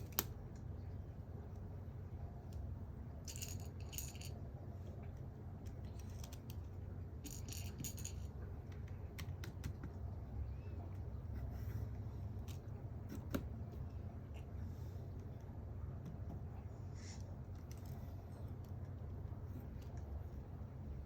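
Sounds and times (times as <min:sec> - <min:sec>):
steady low hum: 0:00.0 - 0:21.0
small metal objects clicking and rattling: 0:03.2 - 0:04.4, 0:05.8 - 0:08.4.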